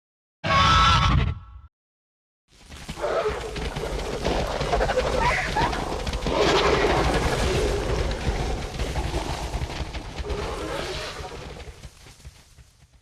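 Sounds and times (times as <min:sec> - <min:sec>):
harsh rasping creature calls: 0:03.0 - 0:09.6
deep rumble: 0:03.4 - 0:12.0.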